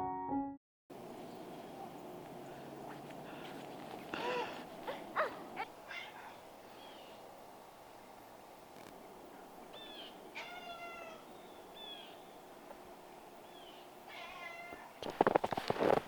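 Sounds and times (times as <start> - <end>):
animal mewing calls: 2.8 - 7.2.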